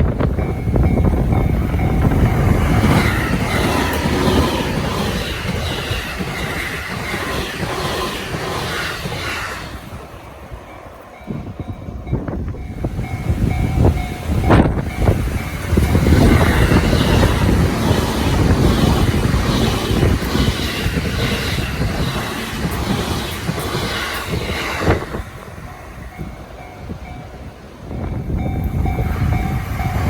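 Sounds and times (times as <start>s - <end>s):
faint crossing warning bell: 0.0s - 6.6s, 9.9s - 21.4s, 24.3s - 30.0s
train rumbling over tracks: 0.0s - 30.0s.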